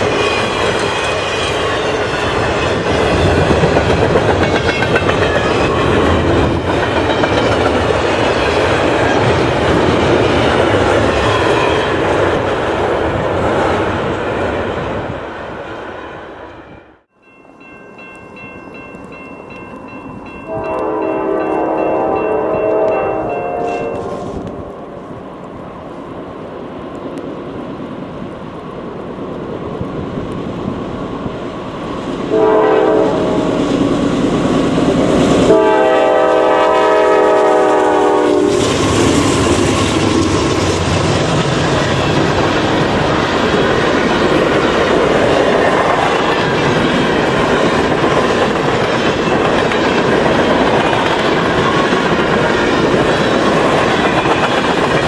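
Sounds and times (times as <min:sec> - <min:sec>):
freight train rumbling past: 0:00.0 - 0:55.0
train horn blasts: 0:20.4 - 0:24.4, 0:32.3 - 0:33.6, 0:35.5 - 0:38.7.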